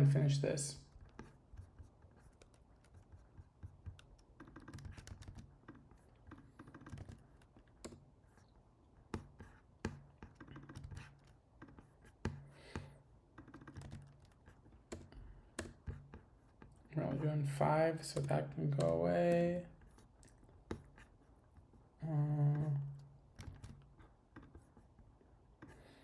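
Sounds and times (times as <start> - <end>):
typing on keyboard: 0.9 - 8.0, 9.1 - 16.5, 22.7 - 24.8.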